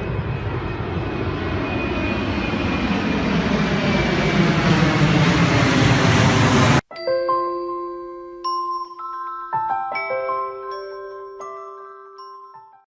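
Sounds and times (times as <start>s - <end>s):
engine-like drone: 0.0s - 6.8s
loud rushing noise: 1.0s - 6.8s.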